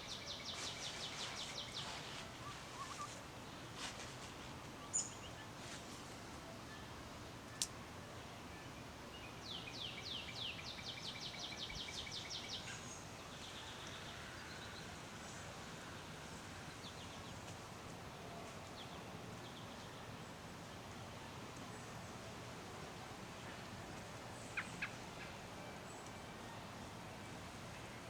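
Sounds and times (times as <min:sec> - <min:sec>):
songbird trill: 0:00.0 - 0:03.6, 0:04.8 - 0:05.8, 0:09.1 - 0:17.5
outdoor background noise: 0:00.0 - 0:28.0.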